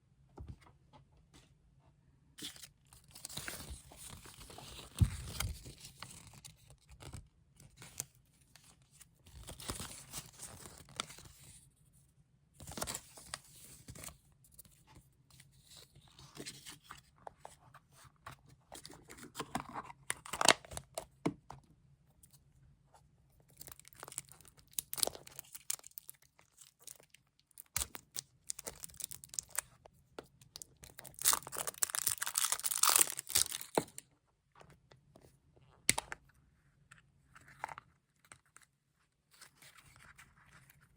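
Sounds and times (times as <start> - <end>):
wrapping rustling and crinkling: 30.6 - 34.0
wrapping being torn open: 31.0 - 33.8.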